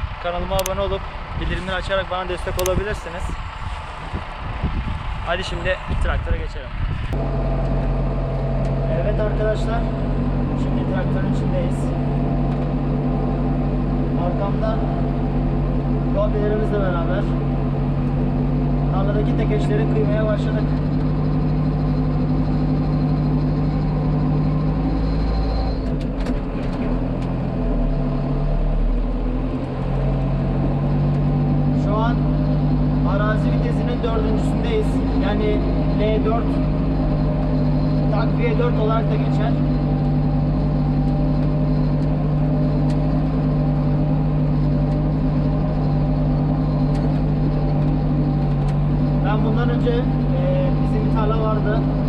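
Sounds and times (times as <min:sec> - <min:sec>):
tractor engine under load: 0:00.0 - 0:06.0, 0:07.2 - 0:52.0
light clicks: 0:02.6 - 0:02.8.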